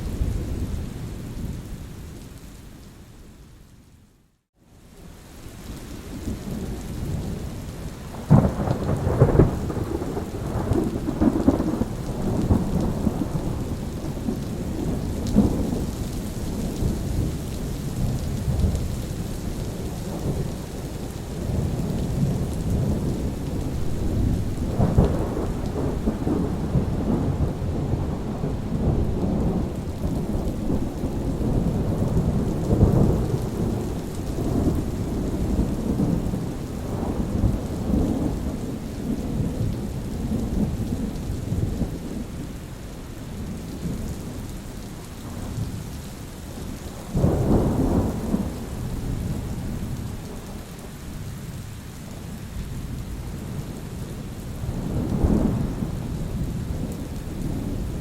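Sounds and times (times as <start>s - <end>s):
steady rain: 0.0s - 58.0s
thunder crack and rumble: 8.2s - 42.4s, 47.0s - 50.7s, 54.6s - 58.0s.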